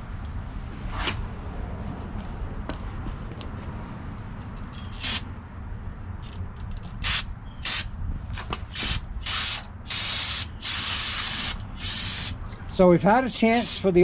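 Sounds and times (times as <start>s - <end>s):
aerosol spray can hissing: 8.8s - 12.4s, 13.5s - 13.9s.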